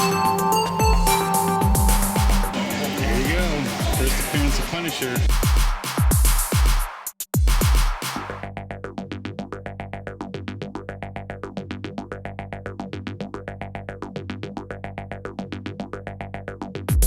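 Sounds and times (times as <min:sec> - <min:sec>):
held synth bass: 0:00.0 - 0:05.5
synthesizer repeated notes: 0:00.0 - 0:06.7.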